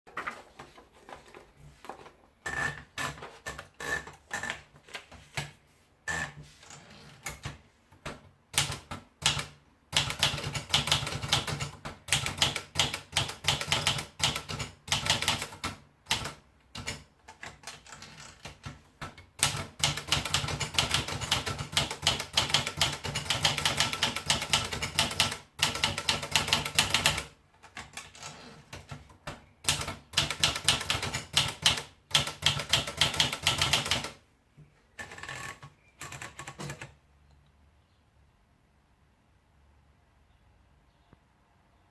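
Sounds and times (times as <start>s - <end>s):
manual typewriter typing: 8.5s - 34.2s, 35.0s - 37.0s.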